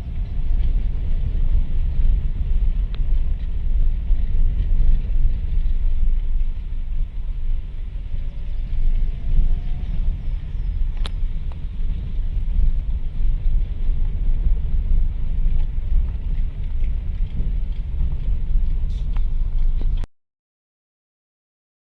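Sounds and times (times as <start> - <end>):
car road rumble: 0.0 - 20.1
suspension knocking clicks: 10.9 - 11.7.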